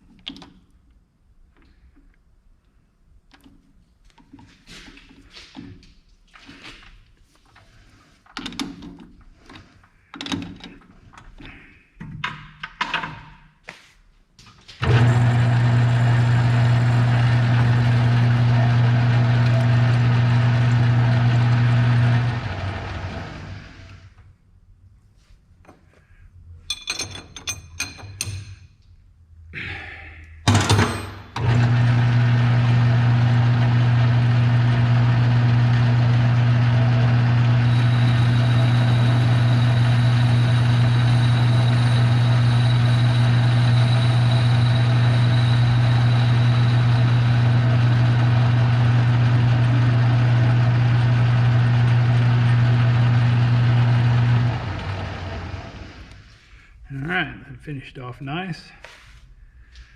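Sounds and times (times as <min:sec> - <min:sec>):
lathe motor humming: 0:14.8 - 0:24.0, 0:31.4 - 0:56.2.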